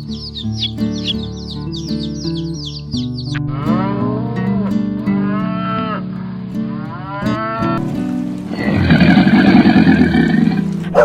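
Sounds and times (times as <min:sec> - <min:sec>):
guitar music: 0:00.0 - 0:11.0
cow mooing: 0:06.9 - 0:11.0.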